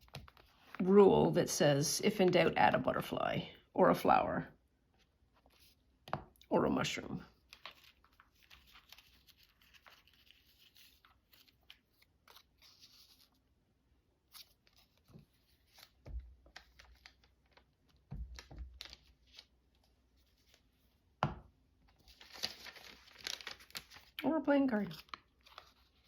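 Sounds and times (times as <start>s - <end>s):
paper crinkling: 0.0s - 1.0s, 7.3s - 13.4s, 14.3s - 20.8s, 21.9s - 26.0s
paper rustling: 0.0s - 1.0s, 7.3s - 13.4s, 14.3s - 20.9s, 21.9s - 26.0s.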